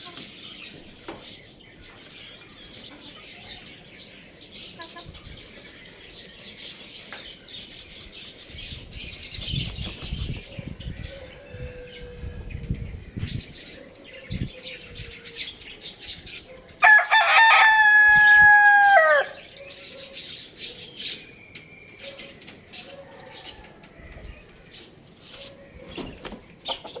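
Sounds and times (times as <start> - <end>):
chickens chirping and clucking: 0.0 - 27.0
rooster crowing: 16.8 - 19.4.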